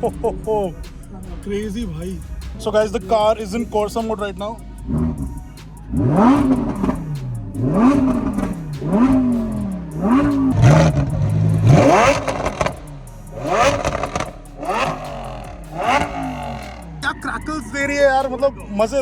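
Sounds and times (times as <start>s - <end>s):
exhaust crackles and pops: 0.0s - 19.0s
sports car engine revving: 0.0s - 19.0s.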